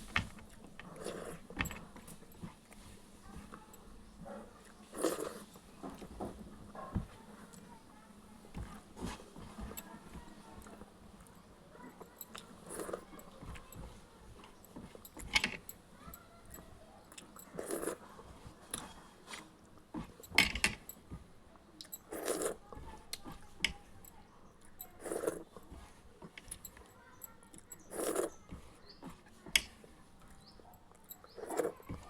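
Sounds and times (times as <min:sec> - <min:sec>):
small mouth clicks and clinks: 0:00.3 - 0:03.9, 0:09.4 - 0:32.0.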